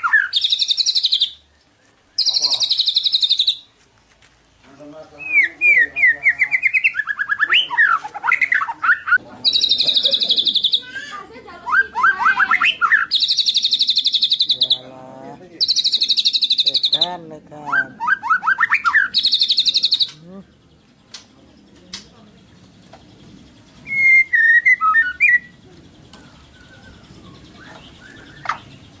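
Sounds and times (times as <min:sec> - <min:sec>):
songbird singing with trills: 0:00.0 - 0:03.7, 0:05.1 - 0:29.0
sharp click: 0:21.1 - 0:22.2.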